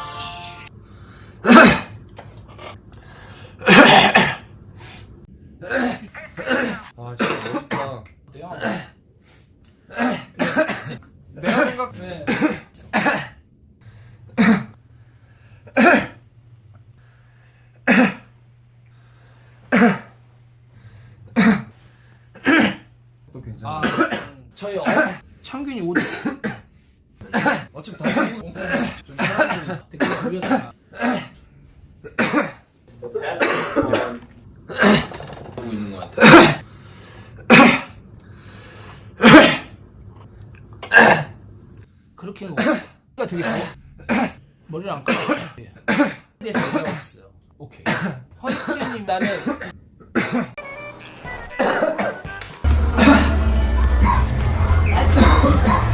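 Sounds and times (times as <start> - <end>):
man coughing: 3.7 - 4.4, 14.3 - 14.8, 15.7 - 16.2, 17.8 - 18.3, 19.7 - 20.2, 20.8 - 22.8, 33.3 - 34.2.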